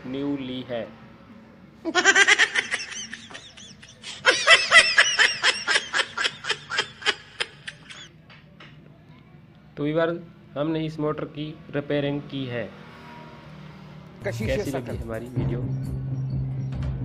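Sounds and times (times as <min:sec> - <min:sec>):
high-pitched laughter: 0:01.9 - 0:08.1.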